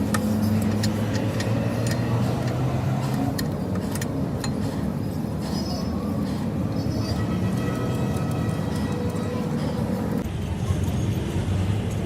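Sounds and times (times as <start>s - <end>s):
metallic tool ticks and taps: 0.0s - 4.8s.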